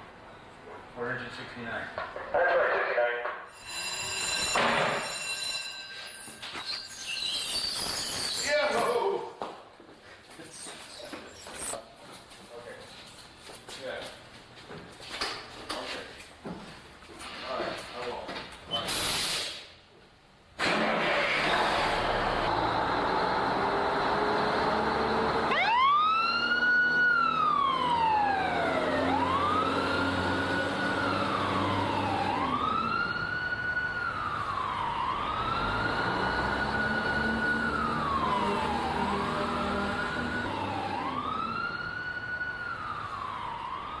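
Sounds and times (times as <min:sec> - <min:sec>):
fire engine siren wailing: 0:21.0 - 0:44.0.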